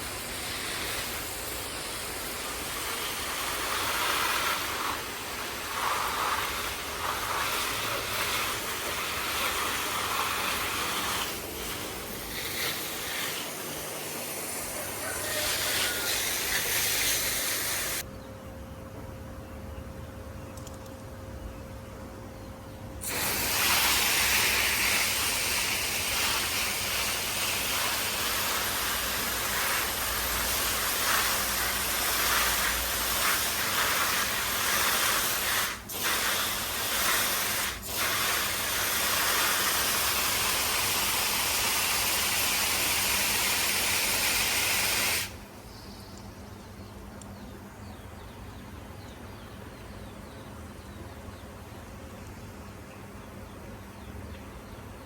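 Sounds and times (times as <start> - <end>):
garden hose spraying water: 0.0 - 18.0, 23.0 - 46.4.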